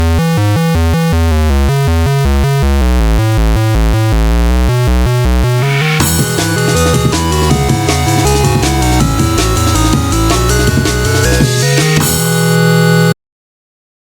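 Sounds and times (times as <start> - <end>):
synthesizer notes over heavy bass: 0.0 - 13.1
drum and bass beat: 5.0 - 12.7.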